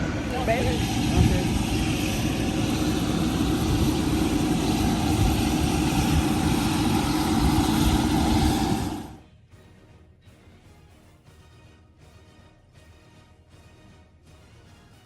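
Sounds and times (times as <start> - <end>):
helicopter engine hum: 0.0 - 9.2
rotor rushing rumble: 0.0 - 9.2.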